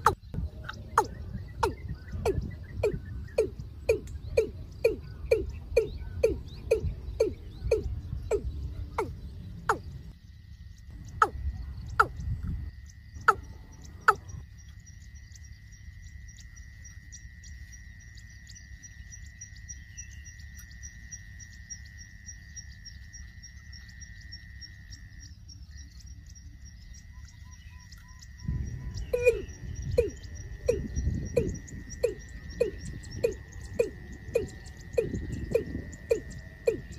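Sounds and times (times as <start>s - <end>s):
low rumble: 0.0s - 14.6s, 28.2s - 36.9s
fast high pulsing chirp: 0.0s - 36.9s
steady high hum: 0.0s - 36.9s.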